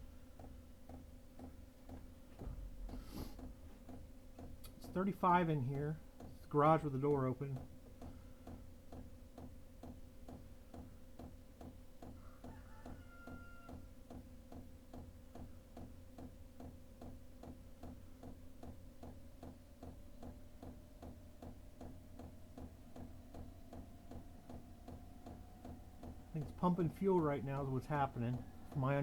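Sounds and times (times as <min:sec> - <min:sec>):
blower fan humming: 0:00.0 - 0:09.3, 0:16.9 - 0:29.0
fuel pump ticking: 0:00.0 - 0:12.6, 0:14.0 - 0:29.0.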